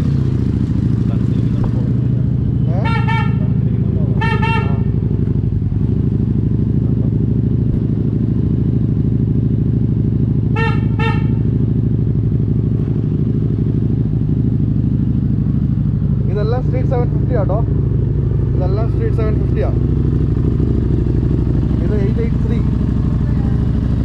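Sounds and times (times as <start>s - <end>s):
motorcycle engine running: 0.0s - 24.0s
horn double toots: 2.6s - 5.1s, 10.4s - 11.7s.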